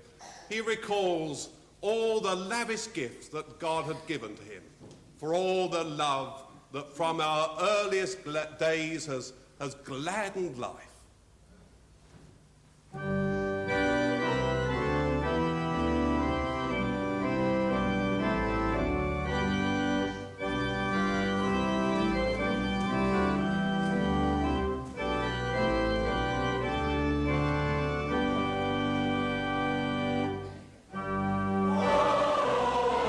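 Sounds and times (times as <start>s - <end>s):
church organ playing hymn: 12.9s - 33.0s.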